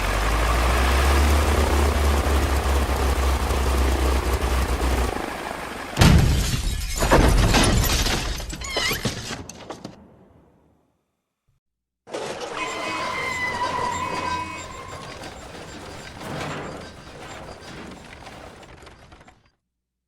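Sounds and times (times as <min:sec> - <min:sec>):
engine running: 0:00.0 - 0:06.0
crash of breaking debris: 0:12.1 - 0:19.5.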